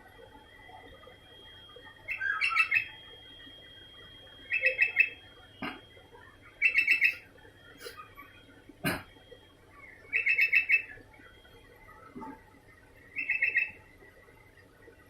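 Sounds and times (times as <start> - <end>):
bird chirping: 2.0 - 3.0, 4.4 - 5.8, 6.5 - 8.4, 9.7 - 12.1, 13.0 - 13.9.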